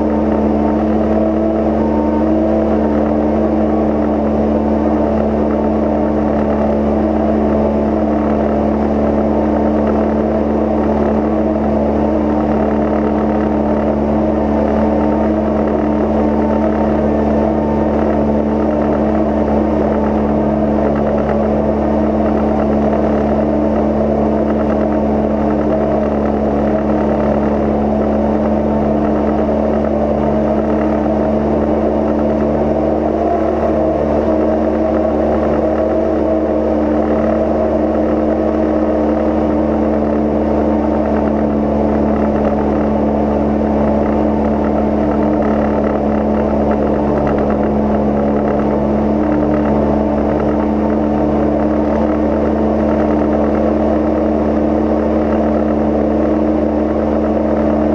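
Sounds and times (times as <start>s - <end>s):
light aircraft engine droning: 0.0s - 57.9s.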